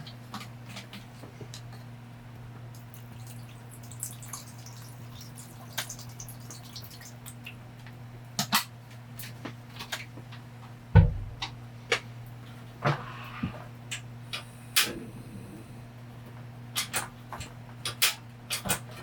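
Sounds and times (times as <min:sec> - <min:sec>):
steady low hum: 0:09.1 - 0:16.8
dull thump: 0:11.0 - 0:11.4.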